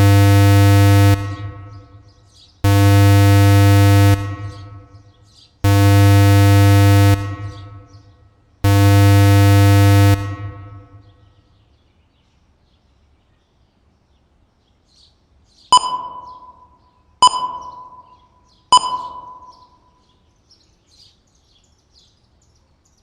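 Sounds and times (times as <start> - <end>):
electronic warning siren blasts: 0.0 - 5.0, 5.6 - 7.9, 8.6 - 11.0.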